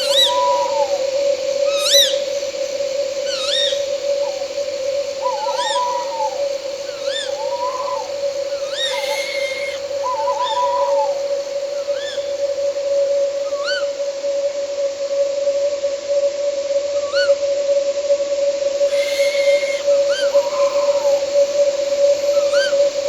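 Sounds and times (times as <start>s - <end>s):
owl calls: 0.0s - 14.1s, 17.0s - 17.4s, 18.8s - 23.0s
lower wavering call: 0.0s - 15.8s, 18.5s - 23.0s
night insects droning: 0.0s - 23.0s.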